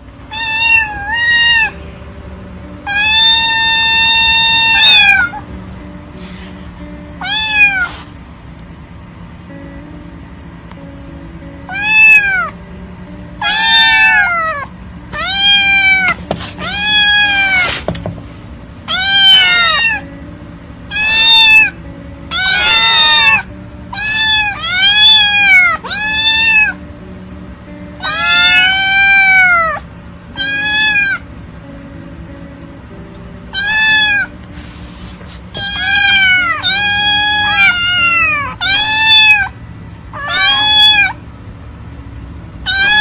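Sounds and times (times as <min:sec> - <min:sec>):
kitten meowing: 0:00.3 - 0:01.8, 0:02.8 - 0:05.5, 0:07.2 - 0:08.1, 0:11.7 - 0:12.6, 0:13.4 - 0:17.9, 0:18.9 - 0:20.1, 0:20.9 - 0:26.8, 0:28.0 - 0:31.2, 0:33.5 - 0:34.4, 0:35.5 - 0:41.2, 0:42.6 - 0:43.0.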